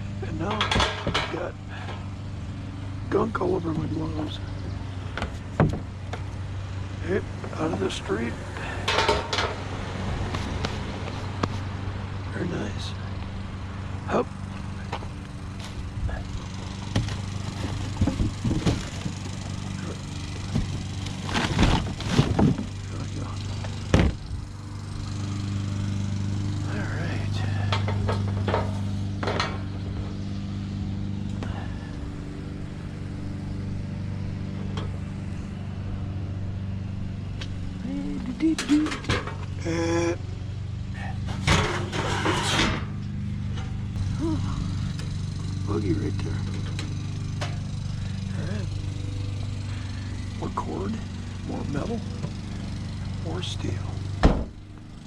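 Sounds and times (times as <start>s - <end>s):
vehicle engine idling: 0.0s - 55.0s
scrap metal clattering: 41.2s - 43.0s.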